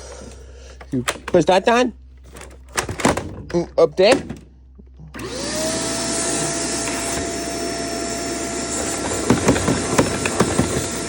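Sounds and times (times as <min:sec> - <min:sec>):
vacuum cleaner whining: 0:05.1 - 0:11.0.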